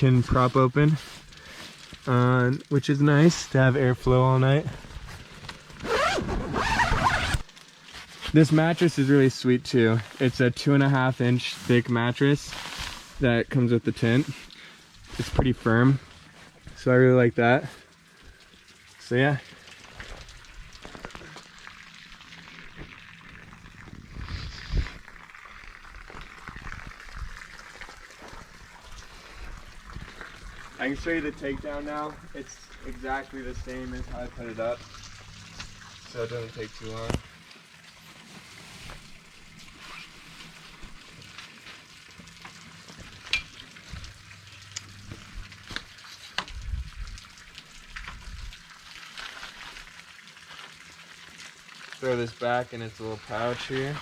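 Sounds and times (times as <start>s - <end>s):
rustling and handling noise: 0.0s - 9.3s, 9.9s - 16.9s, 36.6s - 46.6s
tent fabric rustling: 4.8s - 8.6s, 11.5s - 13.3s, 38.1s - 41.4s.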